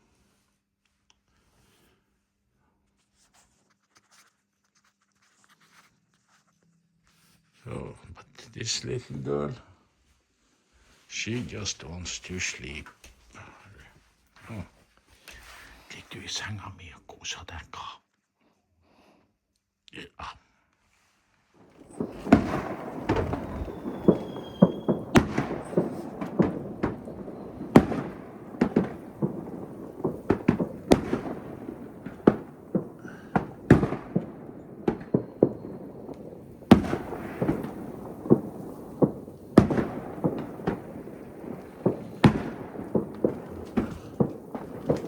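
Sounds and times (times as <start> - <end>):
fireworks crackle: 21.6 - 45.0
fireworks sharp bangs: 21.7 - 45.0
fireworks whistle: 21.7 - 45.0.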